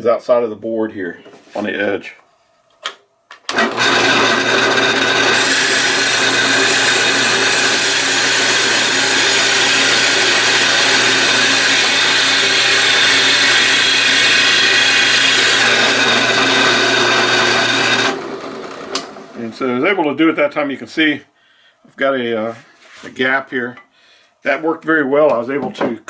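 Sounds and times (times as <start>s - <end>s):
hole saw cutting wood: 3.5s - 19.6s.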